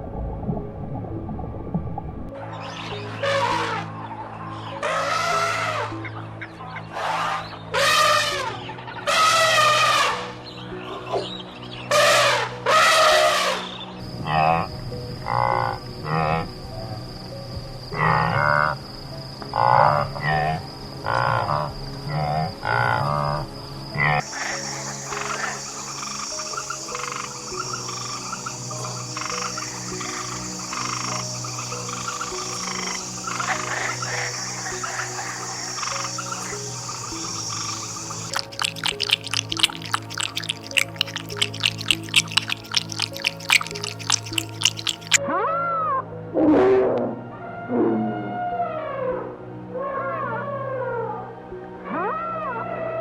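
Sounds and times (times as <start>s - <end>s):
frogs croaking: 13.0s - 45.2s
high insect drone: 14.0s - 45.2s.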